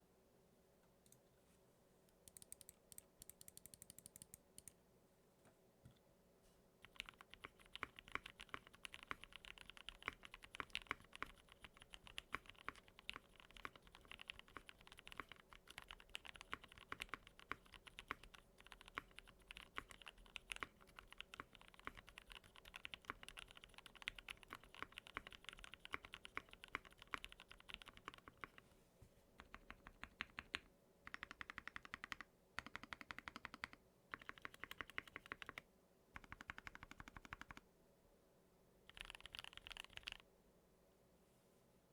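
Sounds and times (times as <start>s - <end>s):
typing on mechanical keyboard: 2.3s - 4.7s, 6.8s - 28.6s, 29.4s - 35.6s, 36.2s - 37.6s, 38.9s - 40.2s.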